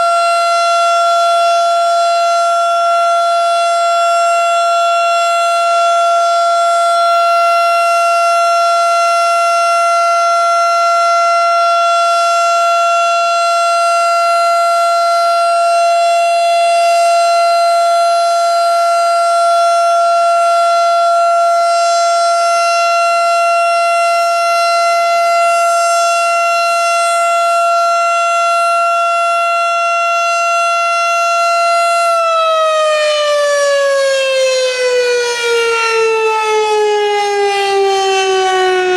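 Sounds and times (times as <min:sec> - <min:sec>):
warning siren: 0:00.0 - 0:38.9.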